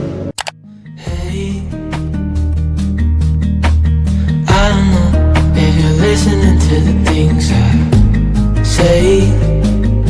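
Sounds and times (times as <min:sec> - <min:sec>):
slow song: 0:00.0 - 0:10.0.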